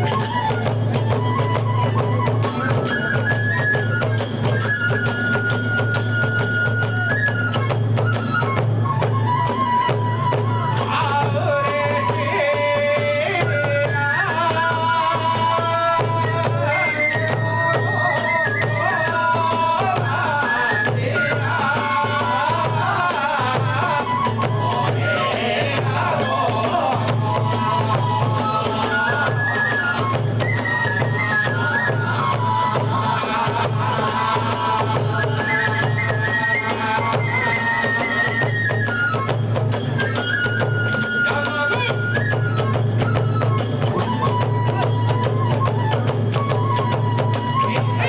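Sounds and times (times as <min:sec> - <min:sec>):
bamboo flute melody: 0:00.0 - 0:48.0
drum beats: 0:00.0 - 0:48.0
hand cymbal beats: 0:00.0 - 0:48.0
steady drum beat: 0:19.2 - 0:38.7.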